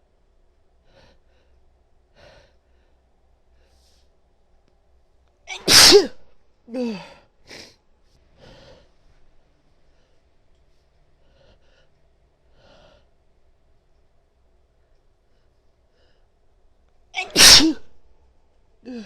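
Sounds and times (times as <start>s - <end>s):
quiet breaths: 0.0s - 5.4s, 6.2s - 17.2s
woman sneezing: 5.5s - 6.2s, 17.2s - 17.9s.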